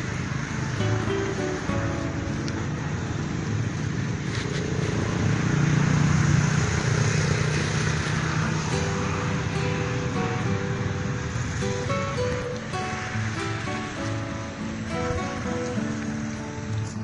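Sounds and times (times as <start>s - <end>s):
motor vehicle passing: 0.0s - 17.0s.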